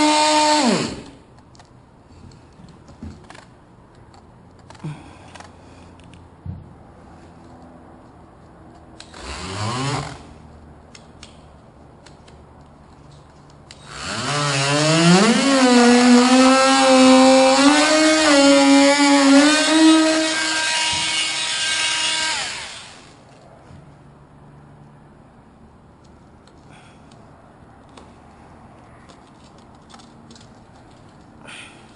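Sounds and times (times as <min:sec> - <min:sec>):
electric power tool motor running: 0:00.0 - 0:01.1, 0:09.0 - 0:10.3, 0:13.8 - 0:23.2.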